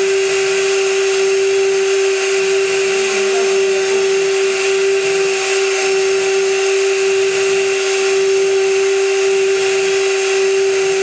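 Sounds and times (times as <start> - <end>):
milling machine spindle whine: 0.0 - 11.0.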